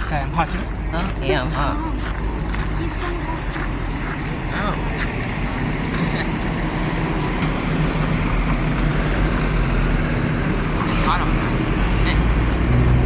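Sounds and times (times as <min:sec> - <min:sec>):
vehicle engine rumbling: 0:00.0 - 0:13.0.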